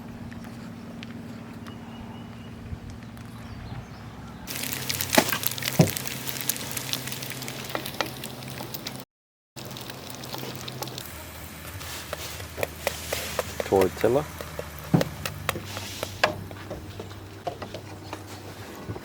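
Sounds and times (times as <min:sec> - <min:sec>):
food sizzling in a hot pan: 0:04.5 - 0:09.0.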